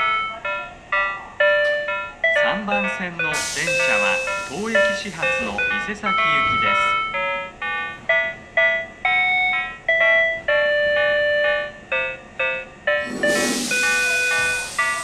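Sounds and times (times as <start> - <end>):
electronic melody of short notes: 3.3 - 7.2, 12.9 - 15.0
rush of hiss: 3.4 - 5.1, 13.0 - 15.0.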